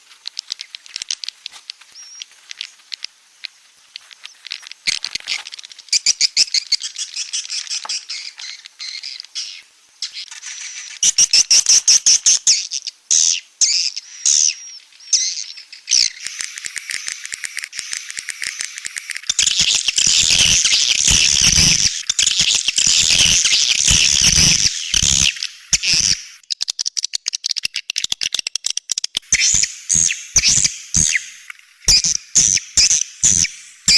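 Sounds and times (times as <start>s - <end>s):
swiftlets twittering: 16.1s - 26.4s, 29.2s - 33.9s
sharp clicks: 16.2s - 33.9s.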